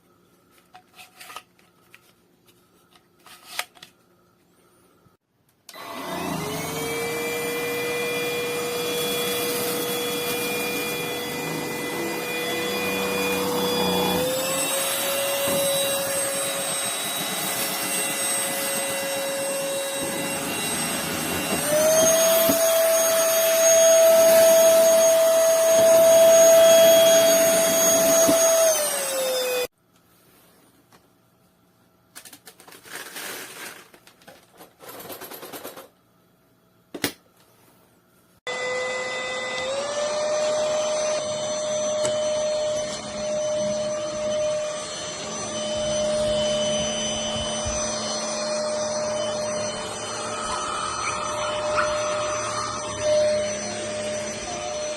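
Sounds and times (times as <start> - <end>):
vacuum motor whine: 5.7 - 29.7, 38.5 - 54.9.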